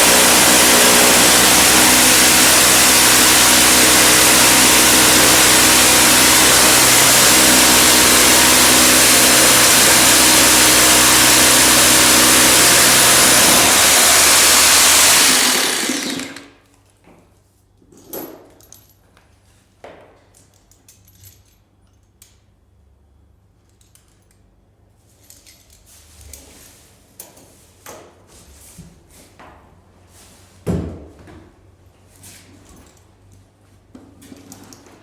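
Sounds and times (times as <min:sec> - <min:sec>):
power tool running: 0:00.0 - 0:16.6.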